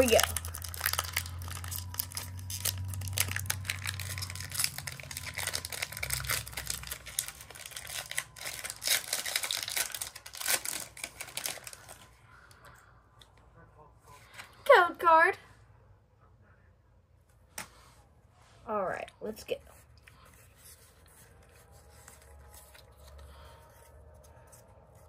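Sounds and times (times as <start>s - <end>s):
foil wrapper tearing and crinkling: 0.0s - 12.1s.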